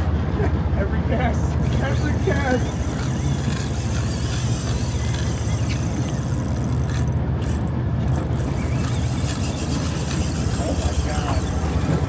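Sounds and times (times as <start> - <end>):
boat engine running: 0.0 - 12.0
wind and water hiss: 8.2 - 12.0.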